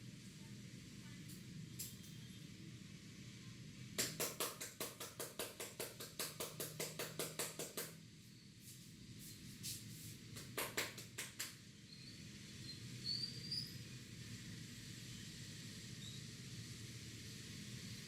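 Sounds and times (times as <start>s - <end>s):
hands tapping on head: 4.0s - 8.0s, 10.4s - 11.6s.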